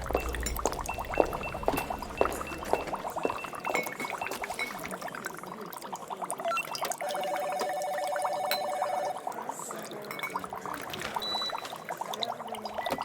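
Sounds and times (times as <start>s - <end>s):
thin electronic tones: 0.0s - 5.0s, 6.5s - 9.3s
glassware clinking: 0.0s - 5.1s, 10.0s - 11.8s
liquid pouring and bubbling: 0.0s - 13.0s.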